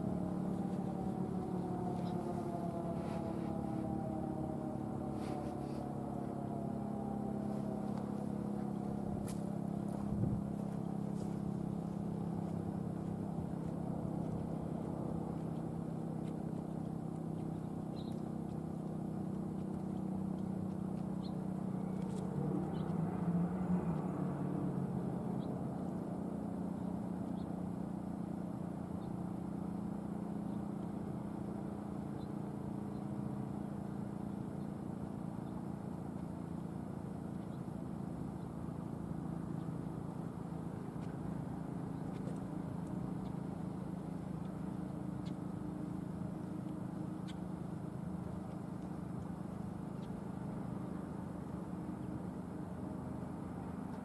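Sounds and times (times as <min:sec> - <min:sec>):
siren winding down: 0:00.0 - 0:15.6
outdoor ambience: 0:00.0 - 0:54.0
steady low hum: 0:00.0 - 0:54.0.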